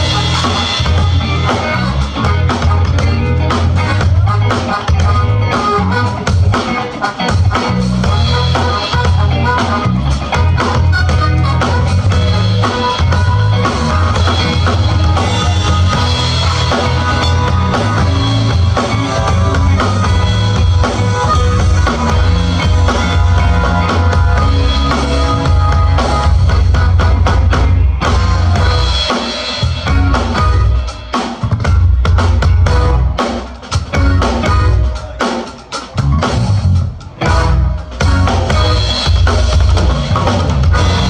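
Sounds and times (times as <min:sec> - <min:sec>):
live band playing pop: 0:00.0 - 0:41.0.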